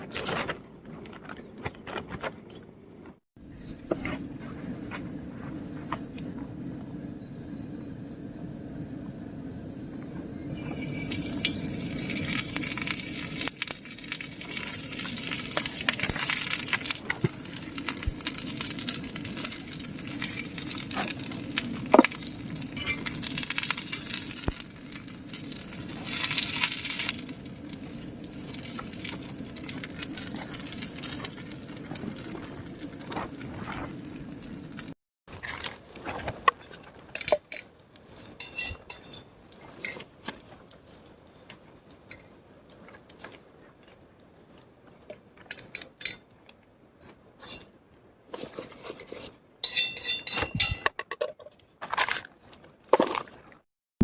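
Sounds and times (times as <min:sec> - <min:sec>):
utensils clinking on cookware: 0:22.7 - 0:23.3, 0:37.2 - 0:40.1, 0:49.6 - 0:51.4.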